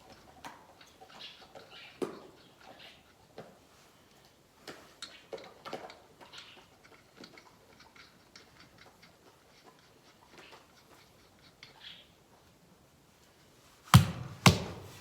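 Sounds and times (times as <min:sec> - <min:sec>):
sharp knocks: 0:14.0 - 0:15.0.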